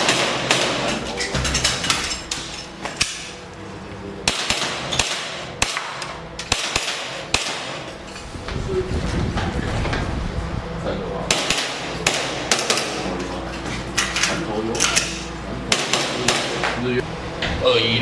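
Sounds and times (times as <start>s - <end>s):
airsoft pistol shots: 0.0s - 0.8s, 4.2s - 7.8s, 11.3s - 13.0s, 15.7s - 16.6s.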